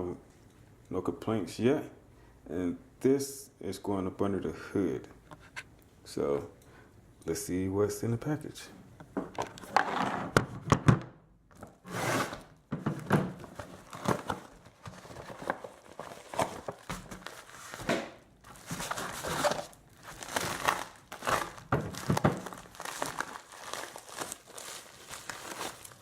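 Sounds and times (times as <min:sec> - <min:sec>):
packaging crinkling and tearing: 0:13.4 - 0:26.0.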